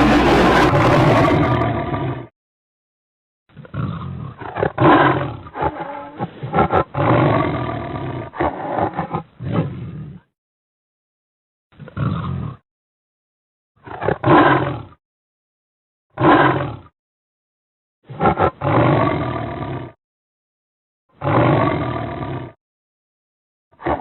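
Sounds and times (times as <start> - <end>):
giant gorilla roaring: 0.0 - 2.2
gorilla growls: 0.0 - 2.3.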